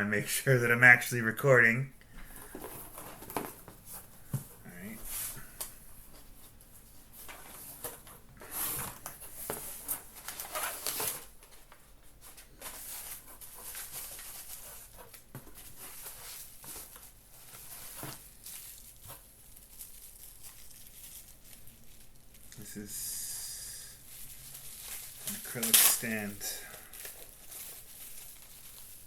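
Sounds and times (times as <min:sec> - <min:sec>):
packaging crinkling and tearing: 0:08.6 - 0:11.6, 0:12.6 - 0:22.7, 0:24.0 - 0:29.0.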